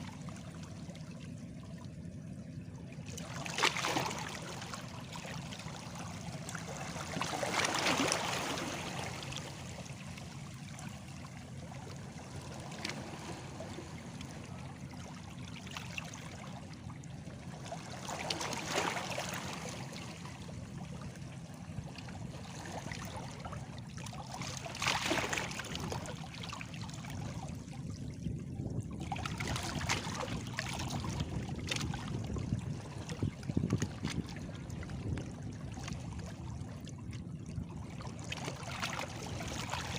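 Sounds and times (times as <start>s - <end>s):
waves lapping against stones: 3.1s - 10.9s, 17.5s - 20.2s, 24.1s - 27.4s, 29.1s - 36.4s.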